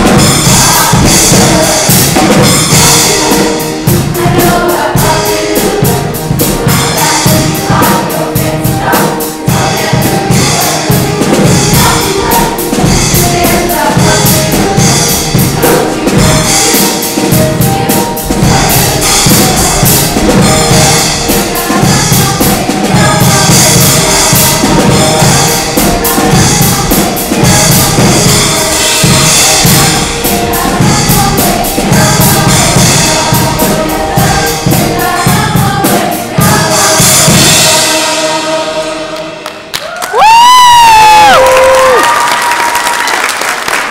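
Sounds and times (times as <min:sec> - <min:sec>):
steady drum beat: 0:00.0 - 0:38.8, 0:40.2 - 0:42.0
choir singing: 0:00.0 - 0:39.8.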